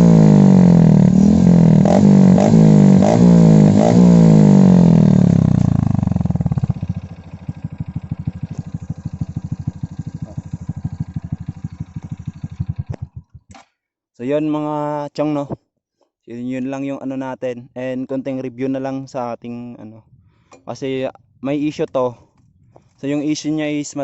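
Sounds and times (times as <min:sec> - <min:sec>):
motorcycle engine revving: 0:00.0 - 0:13.5
exhaust pops: 0:05.0 - 0:13.6.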